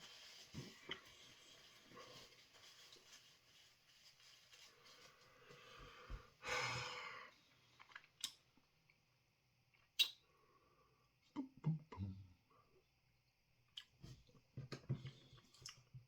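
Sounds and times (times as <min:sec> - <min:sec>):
person breathing out hard: 0:05.4 - 0:07.3.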